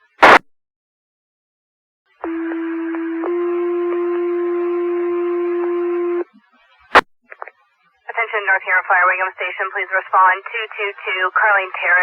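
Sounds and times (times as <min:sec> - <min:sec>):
two-tone radio paging tones: 0:02.2 - 0:06.3.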